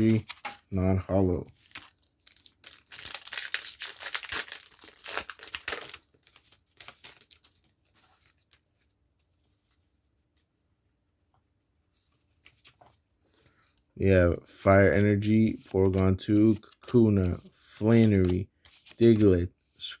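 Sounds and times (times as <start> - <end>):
foil wrapper tearing and crinkling: 1.6 - 7.5.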